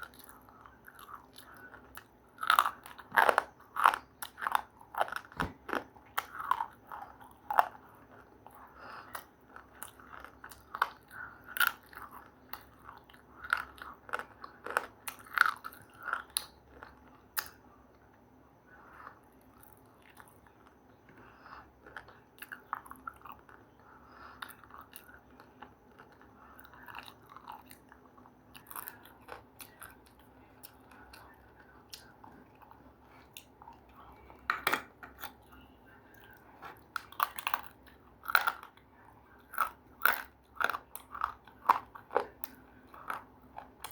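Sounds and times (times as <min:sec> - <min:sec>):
crunchy food being chewed: 0:00.0 - 0:43.9.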